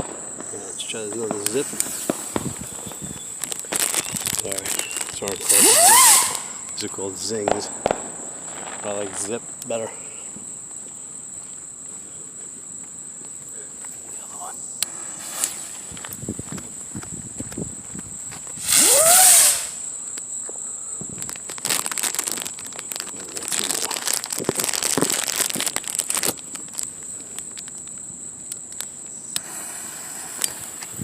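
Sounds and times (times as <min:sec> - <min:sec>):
firework whizzing burst: 0:00.0 - 0:06.7, 0:07.3 - 0:09.2, 0:15.2 - 0:15.9, 0:18.6 - 0:19.9, 0:29.4 - 0:31.0
crackling fizzing sparks: 0:00.0 - 0:09.9, 0:14.8 - 0:17.6, 0:18.4 - 0:20.3, 0:21.1 - 0:31.0
faint hiss: 0:00.0 - 0:11.2, 0:13.4 - 0:17.7, 0:18.4 - 0:27.6, 0:28.6 - 0:31.0.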